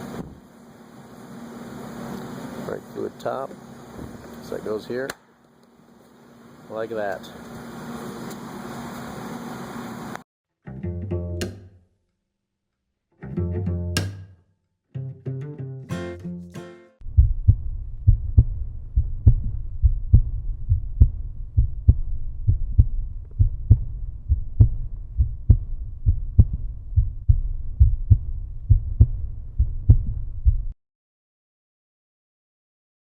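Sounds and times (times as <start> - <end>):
bass-heavy beat: 13.2 - 14.3, 17.0 - 30.8.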